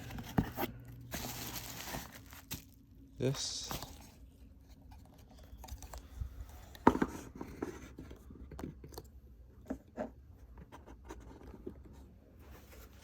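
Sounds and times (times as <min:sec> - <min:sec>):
hands rummaging through items: 0:00.0 - 0:04.2.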